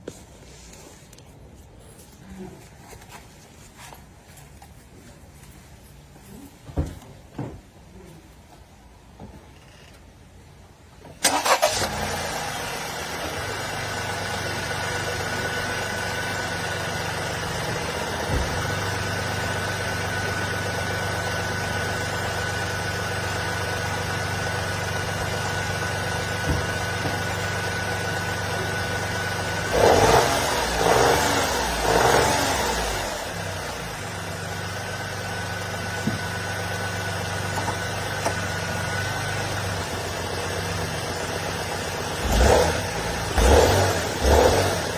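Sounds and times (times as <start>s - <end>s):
engine revving blips: 11.2s - 34.3s, 34.9s - 44.9s
car engine idling: 11.2s - 44.9s.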